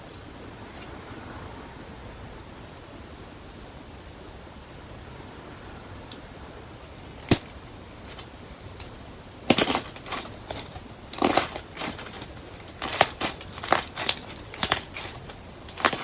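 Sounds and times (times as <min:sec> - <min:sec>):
hard wax snapping: 0:06.9 - 0:16.0
wax crunching and crackling: 0:06.9 - 0:16.0.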